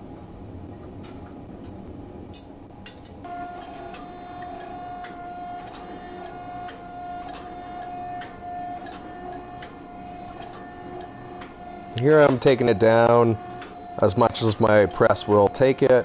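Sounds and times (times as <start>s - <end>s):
power press whine: 3.2s - 16.0s.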